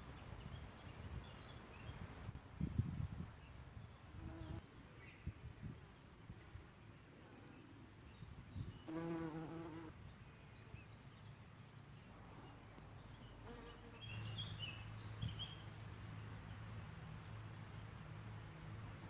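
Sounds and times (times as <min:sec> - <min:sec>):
bee buzzing: 0:08.9 - 0:09.9.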